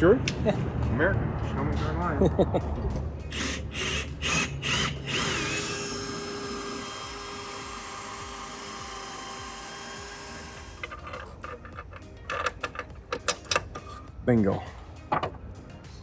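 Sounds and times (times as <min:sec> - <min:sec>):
power drill whining: 0:03.3 - 0:11.7.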